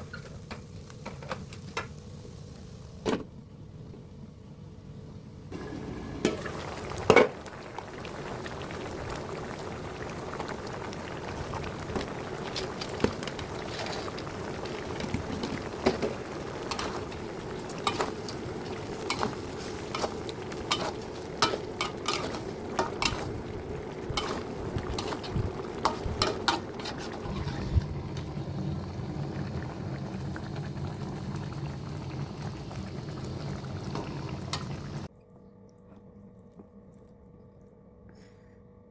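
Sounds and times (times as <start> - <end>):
fish sizzling in a pan: 5.6 - 27.6
utensil scraping a pan: 19.1 - 23.4, 24.1 - 27.9.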